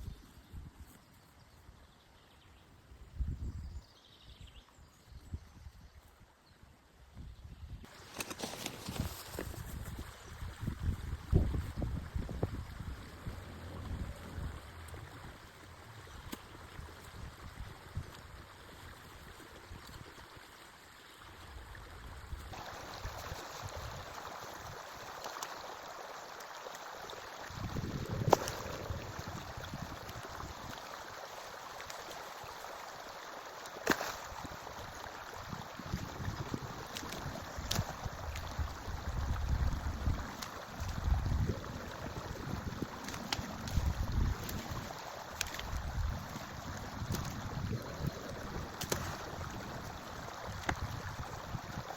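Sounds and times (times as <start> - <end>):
stream water rushing: 10.4 - 21.5, 22.5 - 51.9.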